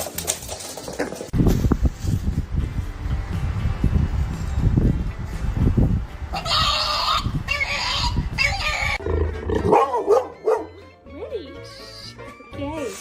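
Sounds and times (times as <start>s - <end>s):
low rumbling thumps: 1.3s - 6.4s
animal harsh calls: 6.4s - 9.8s.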